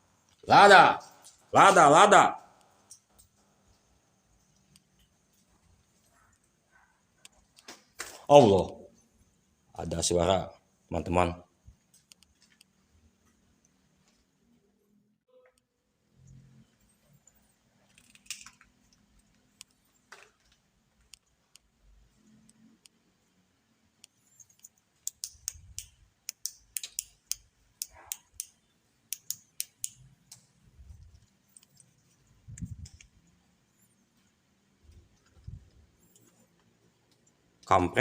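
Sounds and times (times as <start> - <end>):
sharp irregular clicks: 11.9 - 14.2, 23.9 - 33.4.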